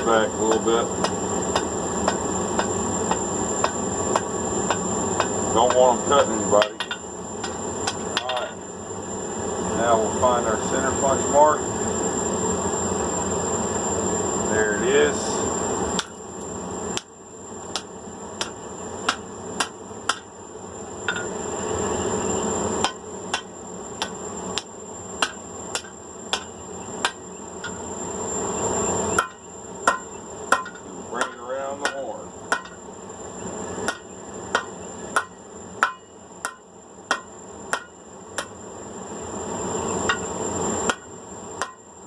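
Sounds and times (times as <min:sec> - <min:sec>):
hammer ringing on anvil: 0:06.6 - 0:07.6, 0:29.2 - 0:32.8, 0:33.9 - 0:38.5, 0:40.9 - 0:41.8.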